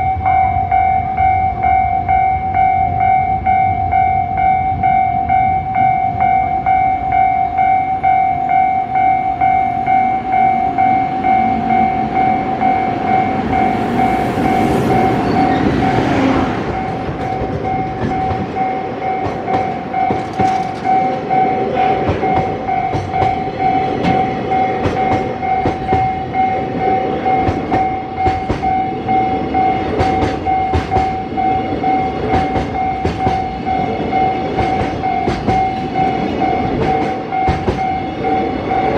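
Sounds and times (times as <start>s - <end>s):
level crossing warning bell: 0.0s - 38.9s
rush of passing train: 0.0s - 38.9s
wheels clacking over rail joints: 11.4s - 38.9s.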